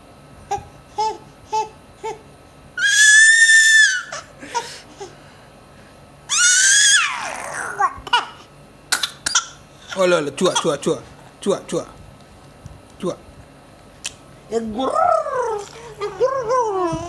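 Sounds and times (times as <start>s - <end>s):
baby squealing: 2.8s - 4.3s, 6.3s - 8.4s.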